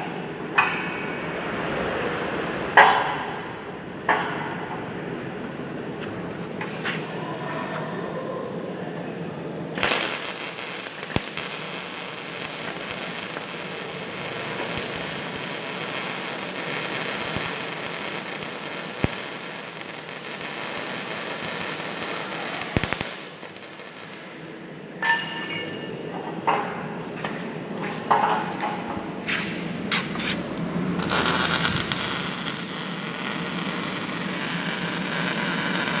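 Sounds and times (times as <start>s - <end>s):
welding arc crackling: 9.8s - 24.4s, 29.8s - 36.0s.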